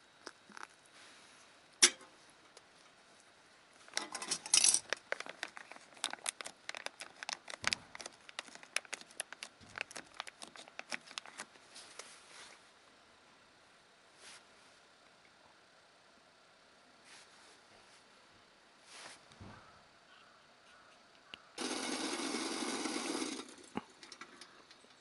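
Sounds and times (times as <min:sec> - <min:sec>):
rustling and crinkling: 0:02.3 - 0:12.7.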